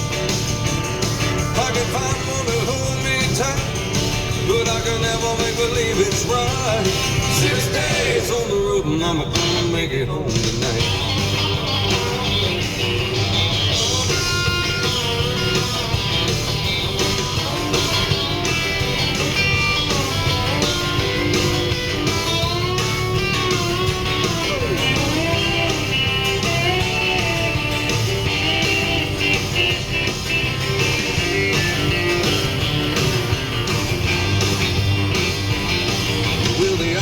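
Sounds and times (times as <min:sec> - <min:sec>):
country band backing: 0:00.0 - 0:37.0
lead guitar solo: 0:10.8 - 0:37.0.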